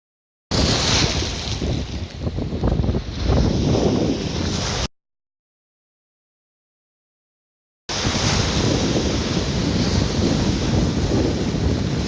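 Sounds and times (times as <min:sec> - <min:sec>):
sea surf: 0:00.5 - 0:04.9, 0:07.9 - 0:12.0
wind buffeting microphone: 0:00.6 - 0:04.9, 0:07.9 - 0:12.0.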